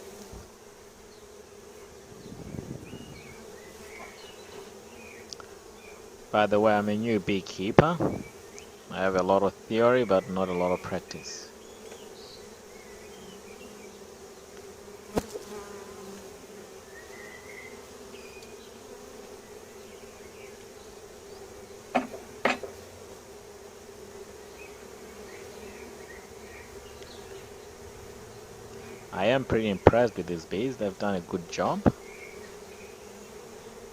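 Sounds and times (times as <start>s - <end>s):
bees buzzing: 0.0s - 33.9s
sharp knocks: 21.9s - 22.8s.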